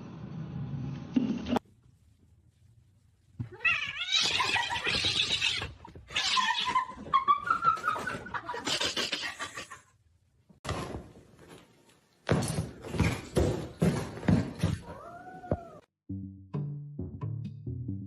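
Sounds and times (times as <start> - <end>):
knocks and scuffling: 10.5 - 15.7.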